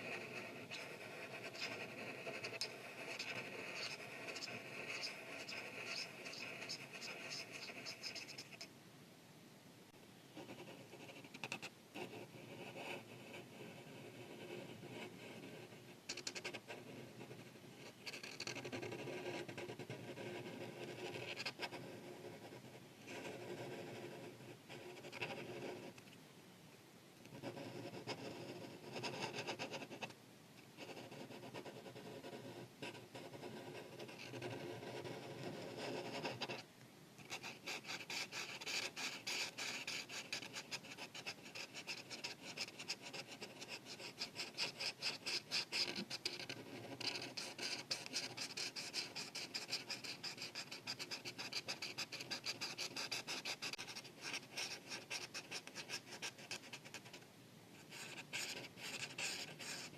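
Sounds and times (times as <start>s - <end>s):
marker rubbing on paper: 0.0s - 8.7s, 16.1s - 16.8s, 30.8s - 36.6s, 37.2s - 57.1s, 57.8s - 59.9s.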